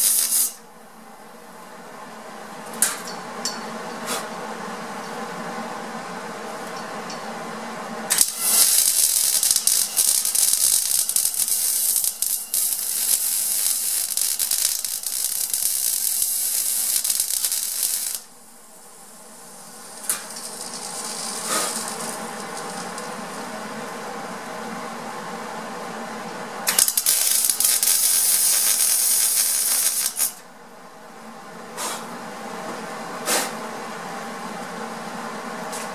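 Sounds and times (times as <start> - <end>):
arc welder crackling: 0.0 - 0.7, 8.1 - 24.0, 26.6 - 30.5.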